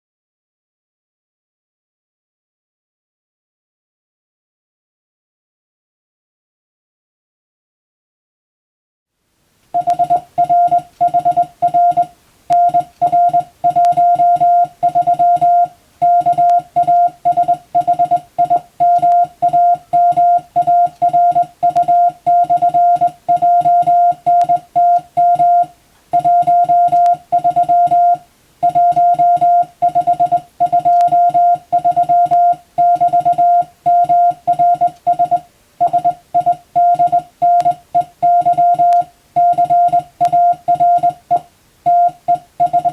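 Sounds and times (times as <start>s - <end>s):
morse code tone: 9.8s - 42.9s.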